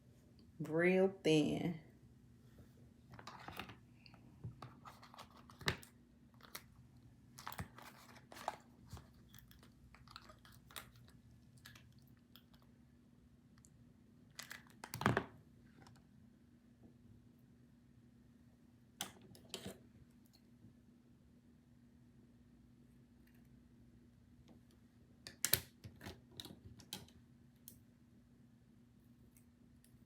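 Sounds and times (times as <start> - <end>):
faint steady hum: 0.0 - 30.0
handling clicks and crinkles: 3.1 - 12.7, 14.3 - 16.1.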